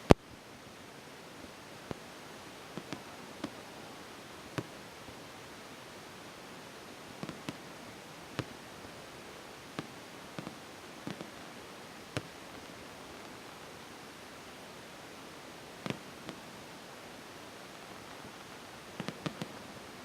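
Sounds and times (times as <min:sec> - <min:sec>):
steady hiss: 0:00.0 - 0:20.0
fireworks popping: 0:02.7 - 0:03.7, 0:07.1 - 0:09.0, 0:09.6 - 0:11.4, 0:15.8 - 0:16.6, 0:17.6 - 0:19.7.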